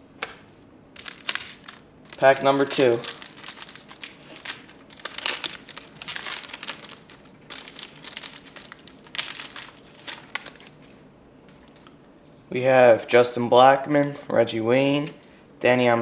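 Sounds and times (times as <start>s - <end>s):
wrapper crinkling: 1.0s - 11.0s.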